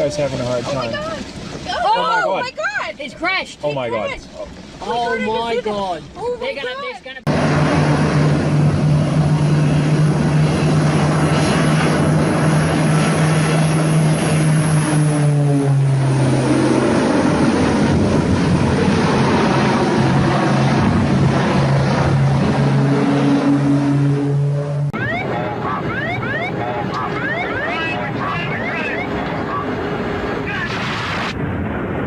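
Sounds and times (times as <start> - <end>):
propeller aircraft engine drone: 7.3 - 32.0.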